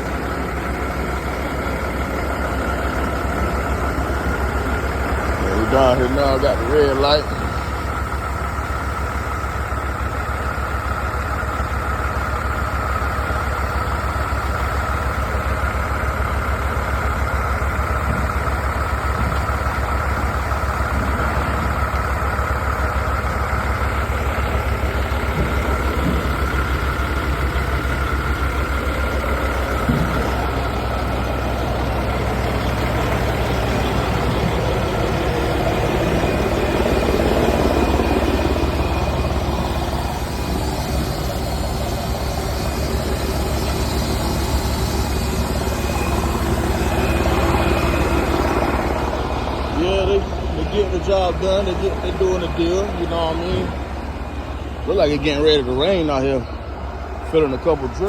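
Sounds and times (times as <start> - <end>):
diesel engine idling: 0.0 - 58.0
high whine: 23.4 - 58.0.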